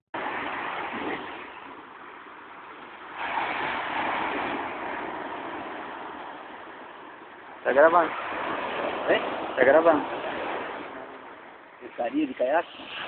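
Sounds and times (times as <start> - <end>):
waves rushing: 0.2 - 13.0.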